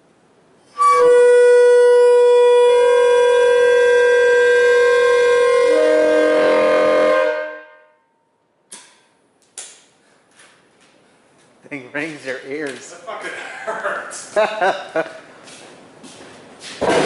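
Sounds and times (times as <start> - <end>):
train air horn discordant blast: 0.8 - 8.2.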